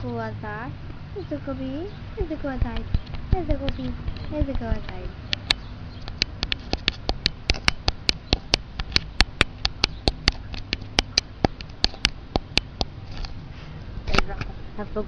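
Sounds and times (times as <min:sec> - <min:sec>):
rapid sharp clicks: 0:02.6 - 0:12.9.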